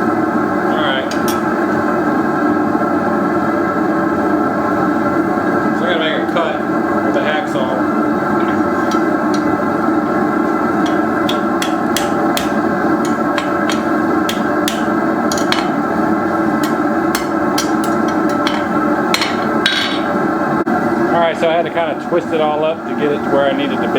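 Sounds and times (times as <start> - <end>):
steady drone: 5.9 - 20.7
hammer striking steel on anvil: 10.8 - 15.9, 16.6 - 20.2.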